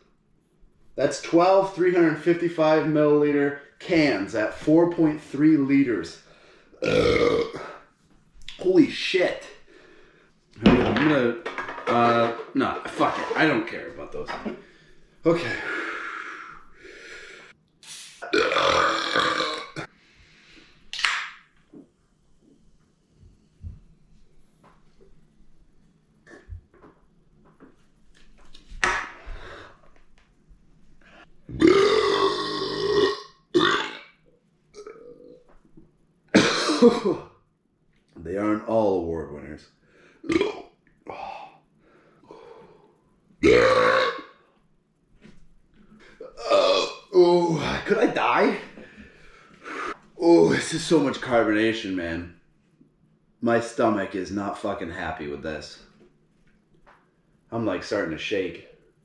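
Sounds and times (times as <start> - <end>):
man burping loudly: 6.8 - 7.8, 18.2 - 19.9, 31.5 - 34.1, 34.8 - 35.4, 36.4 - 37.3, 40.2 - 41.3, 43.4 - 44.4, 46.2 - 47.7.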